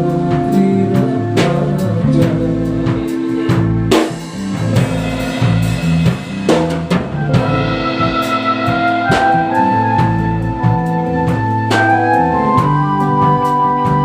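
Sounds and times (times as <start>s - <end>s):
drum kit: 0.0s - 14.0s
walking bass line: 0.0s - 14.0s
held chords: 2.1s - 14.0s.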